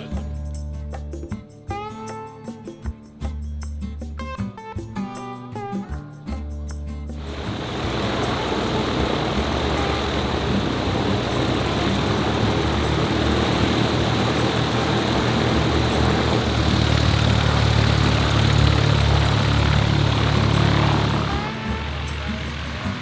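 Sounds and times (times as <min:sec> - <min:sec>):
propeller airplane engine running: 0:07.2 - 0:23.0.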